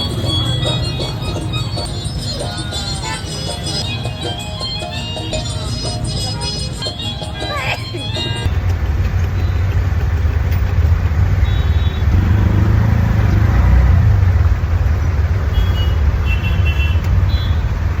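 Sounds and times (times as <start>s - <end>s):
traffic engines rumbling: 0.0s - 18.0s
car horn honks: 11.4s - 12.4s, 15.5s - 17.8s.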